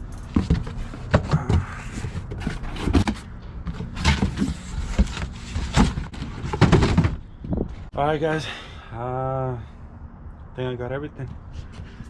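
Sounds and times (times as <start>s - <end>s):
tools knocking and rattling: 0.0s - 7.8s.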